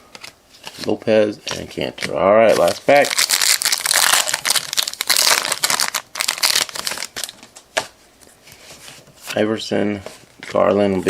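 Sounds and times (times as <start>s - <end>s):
wrapper crinkling and tearing: 2.0s - 7.5s.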